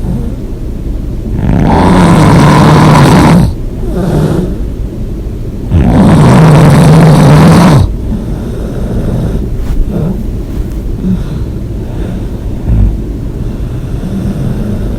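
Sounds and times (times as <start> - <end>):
person snoring loudly: 1.3 - 4.6, 5.7 - 10.2, 11.0 - 13.0
quiet breaths: 7.8 - 14.9.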